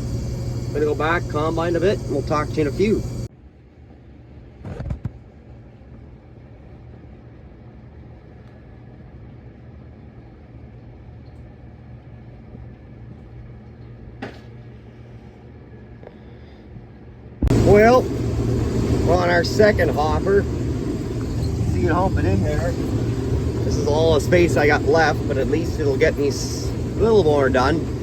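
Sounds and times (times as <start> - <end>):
combine engine drone from cab: 0.0 - 3.3, 12.2 - 28.0.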